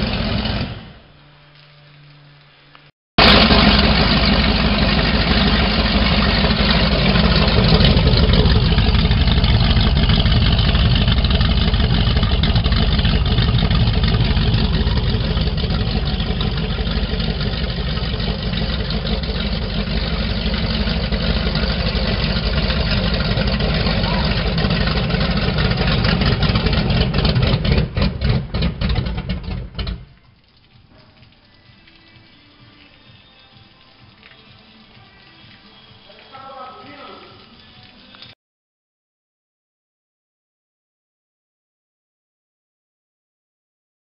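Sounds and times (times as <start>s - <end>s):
boat engines idling loudly: 3.2s - 30.0s.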